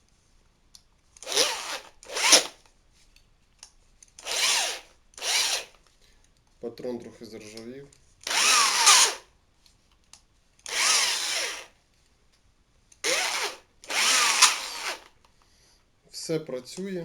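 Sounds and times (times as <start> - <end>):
electric drill motor whine: 1.2 - 2.5, 4.2 - 5.7, 8.3 - 9.2, 10.7 - 11.7, 13.0 - 15.1.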